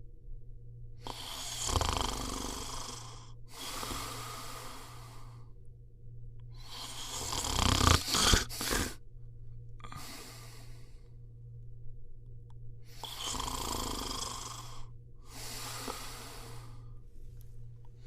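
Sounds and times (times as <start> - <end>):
person snoring: 1.0 - 5.5, 6.5 - 9.0, 9.8 - 11.0, 12.9 - 17.0.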